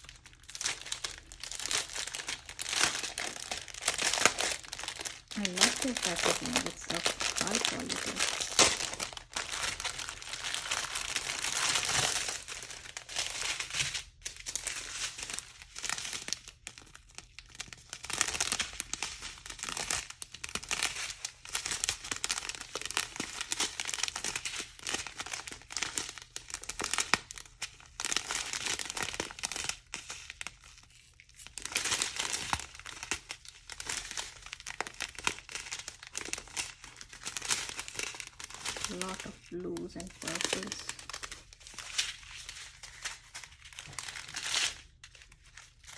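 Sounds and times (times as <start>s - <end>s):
plastic packets crinkling: 0.0s - 45.9s.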